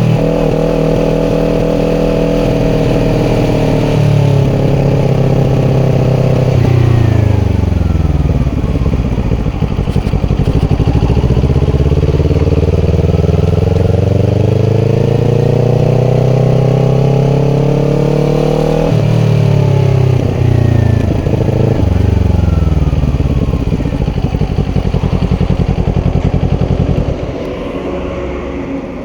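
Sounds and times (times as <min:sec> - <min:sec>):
motorcycle engine revving: 0:00.0 - 0:29.0.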